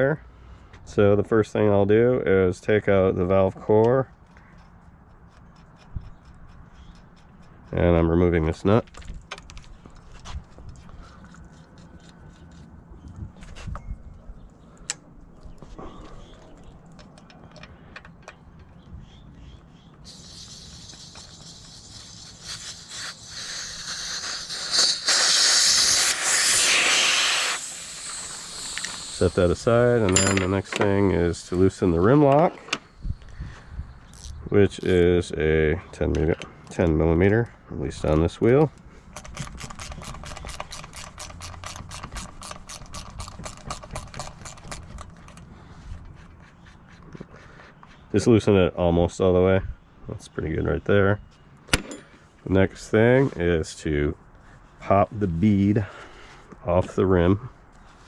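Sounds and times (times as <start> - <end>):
air hissing out of tire: 20.0 - 31.7
ratchet wrench clicking: 20.1 - 30.7, 39.2 - 45.0.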